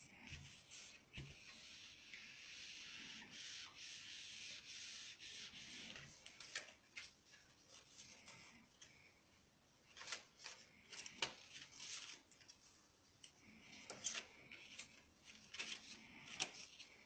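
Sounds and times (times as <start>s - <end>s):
paper cards rustling and clicking: 5.7s - 9.0s, 9.9s - 12.6s, 13.2s - 17.0s.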